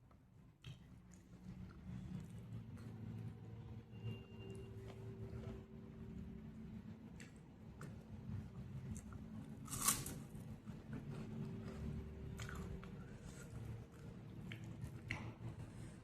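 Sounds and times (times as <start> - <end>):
person chewing wetly: 4.8 - 16.0
crisp food crunches: 9.6 - 10.3.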